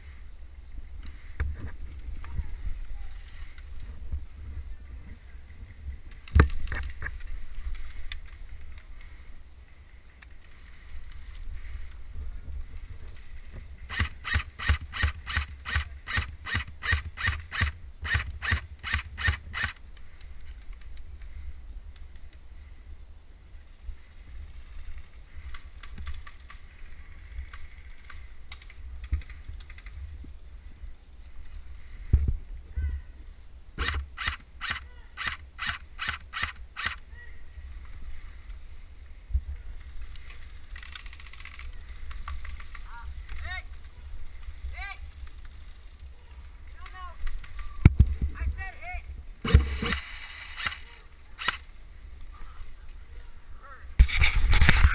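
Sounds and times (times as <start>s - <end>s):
wind rumble on microphone: 0.0s - 14.0s, 20.3s - 33.8s, 47.2s - 49.9s, 53.1s - 54.9s.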